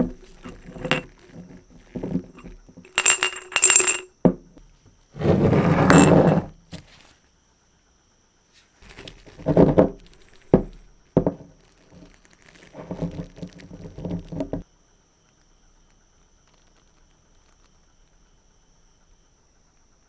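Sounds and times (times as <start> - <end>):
handling noise scuffing rustling: 0.0 - 4.1, 5.2 - 7.2, 8.6 - 14.6.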